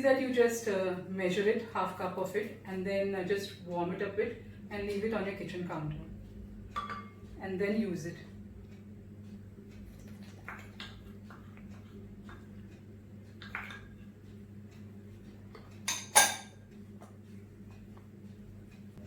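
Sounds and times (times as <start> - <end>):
low steady hum: 0.0 - 19.0
utensils clinking against bowl: 6.8 - 7.2, 15.6 - 16.6.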